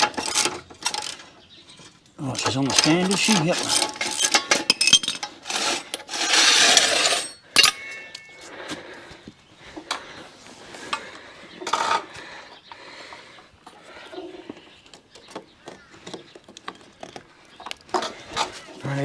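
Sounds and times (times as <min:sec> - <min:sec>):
metal gear scraping: 0:02.4 - 0:07.9.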